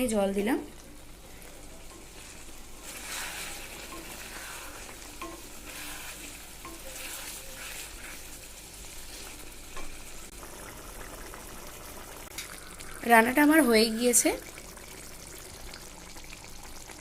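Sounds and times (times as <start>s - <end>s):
curry sizzling in a pan: 0.0s - 17.0s
stirring strokes: 1.5s - 10.3s
scraping against pan: 2.0s - 9.9s.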